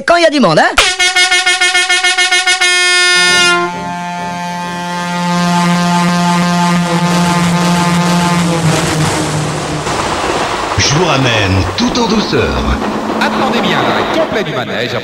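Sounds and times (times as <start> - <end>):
fairground ride horn blast: 0.8 - 9.8.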